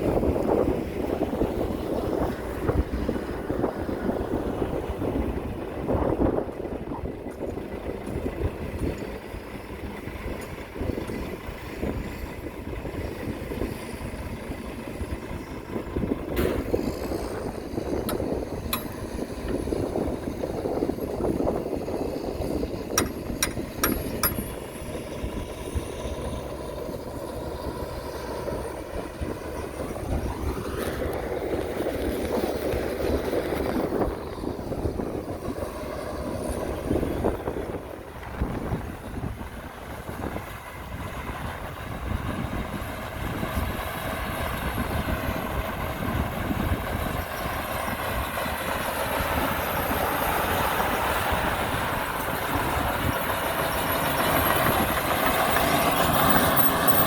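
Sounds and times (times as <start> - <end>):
heavy machinery engine rumble: 0.0 - 57.0
sharp metal clanks: 23.0 - 24.6.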